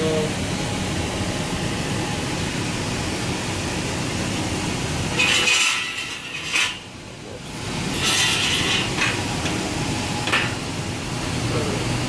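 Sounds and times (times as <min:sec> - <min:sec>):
furnace blower fan running: 0:00.0 - 0:12.0
loud scraping rustle: 0:07.9 - 0:09.2.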